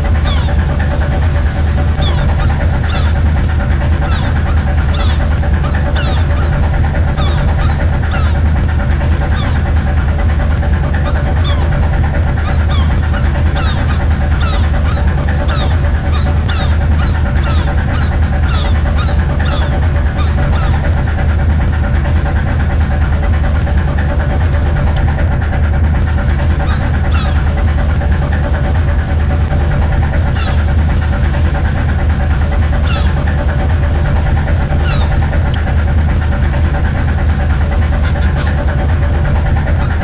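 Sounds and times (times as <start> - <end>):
high bird calls: 0.0 - 10.0, 10.9 - 21.2, 26.5 - 27.6, 30.2 - 31.2, 32.8 - 33.5, 34.7 - 35.2, 38.0 - 38.6, 39.7 - 40.0
boat engine humming: 0.0 - 40.0.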